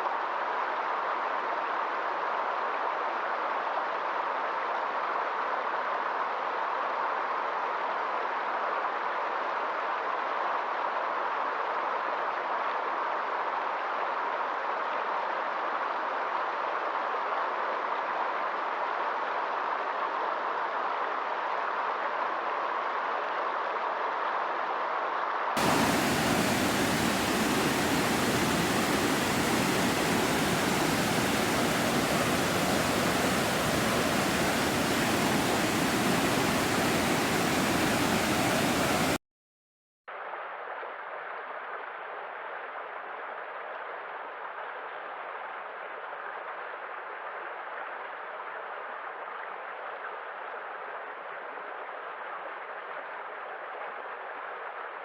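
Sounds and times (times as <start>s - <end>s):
rushing water: 25.6s - 39.2s.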